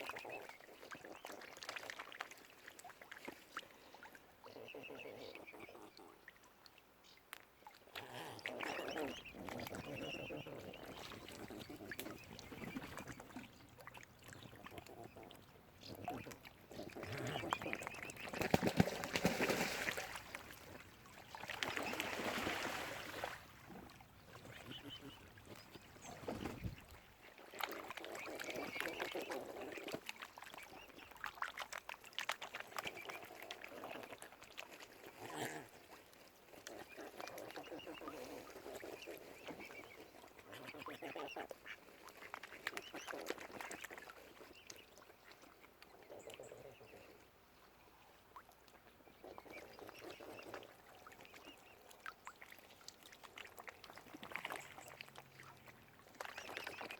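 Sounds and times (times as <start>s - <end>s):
birds dabbling in water: 0.0s - 56.9s
waterfowl calling: 8.4s - 26.9s.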